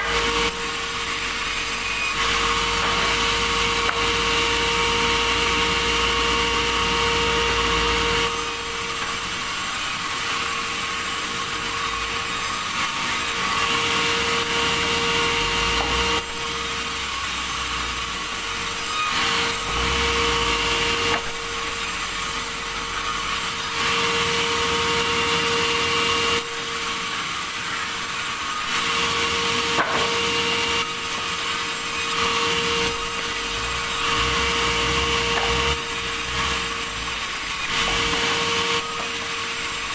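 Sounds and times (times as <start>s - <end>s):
sawmill saw cutting timber: 0.0s - 39.9s.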